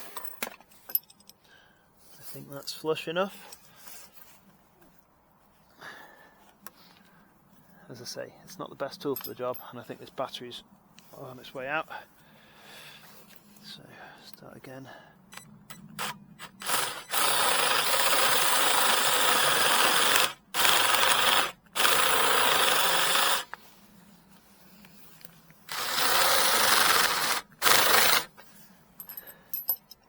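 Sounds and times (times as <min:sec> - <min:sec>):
cordless drill boring into wood: 0:16.0 - 0:23.6, 0:25.7 - 0:28.4.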